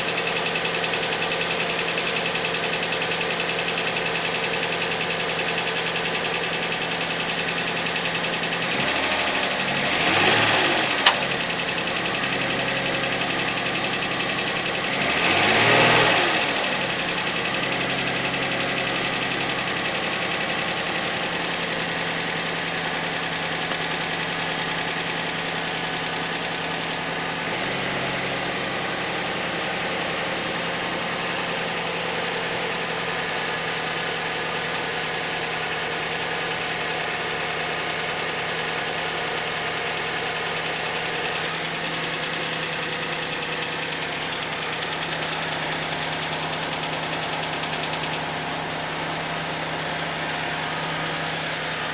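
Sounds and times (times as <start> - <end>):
engine idling with a knock: 10.9 - 14.0.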